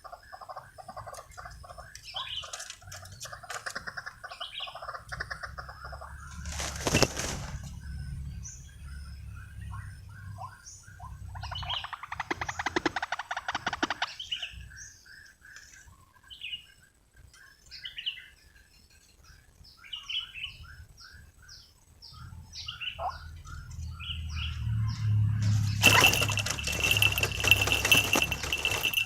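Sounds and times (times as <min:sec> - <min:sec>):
small birds chirping: 0:00.0 - 0:29.0
fast rattling bird call: 0:00.4 - 0:07.9, 0:11.0 - 0:14.6, 0:25.4 - 0:29.0.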